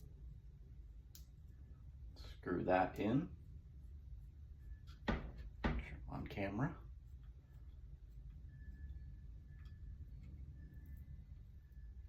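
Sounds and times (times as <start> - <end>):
low room rumble: 0.0 - 12.0
thin squeak: 7.3 - 12.0.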